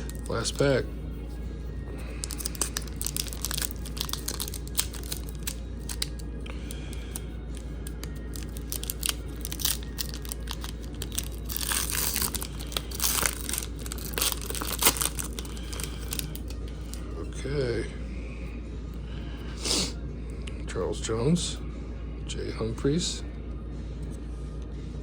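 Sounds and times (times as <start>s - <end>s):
card pack wrapper tearing: 2.2s - 6.2s, 7.1s - 17.0s.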